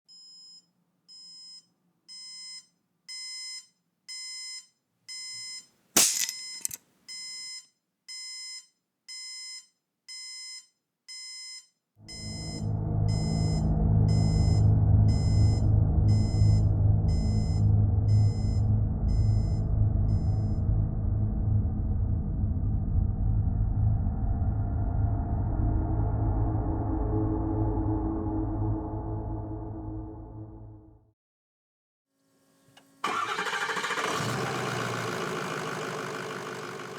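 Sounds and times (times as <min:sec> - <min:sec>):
alarm clock beeping: 0:08.2 - 0:20.6
loud low rumble: 0:12.0 - 0:31.1.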